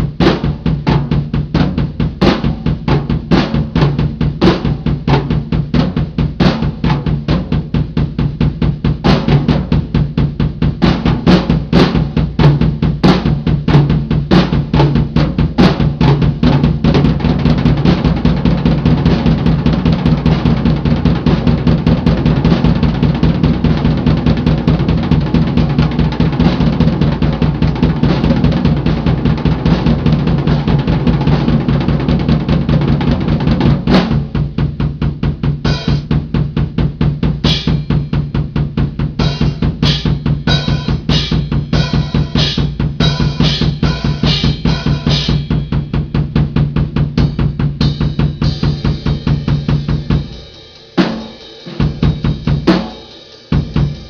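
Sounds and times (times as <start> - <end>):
bass drum and snare drumming: 0.0 - 54.0.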